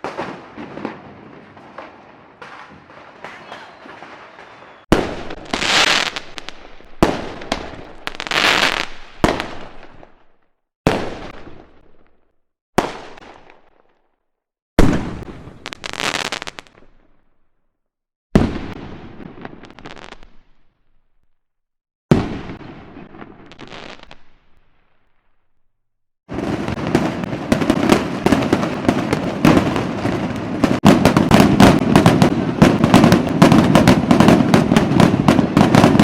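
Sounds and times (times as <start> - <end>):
fireworks crackling: 0.0 - 12.0, 26.3 - 36.0
fireworks bangs: 0.0 - 12.2, 12.8 - 14.0, 14.8 - 17.2, 18.3 - 20.6, 22.1 - 24.8, 26.3 - 36.0.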